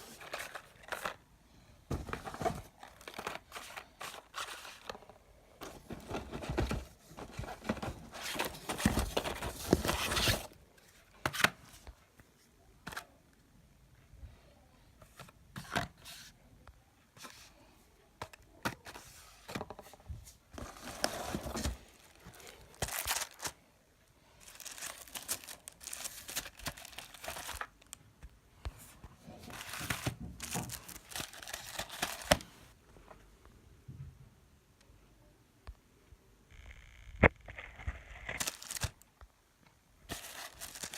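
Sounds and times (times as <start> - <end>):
packaging torn and crinkled: 22.0 - 23.6, 24.4 - 27.9, 37.2 - 39.0.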